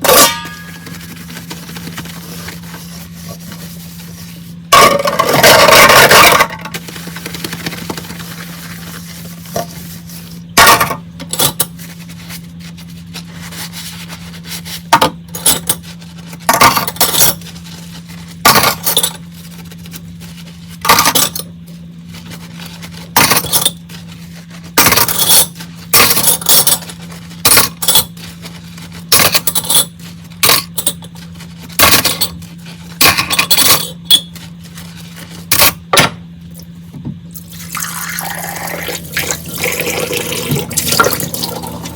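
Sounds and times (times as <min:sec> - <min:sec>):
dishes and cutlery clinking: 0:00.0 - 0:01.1.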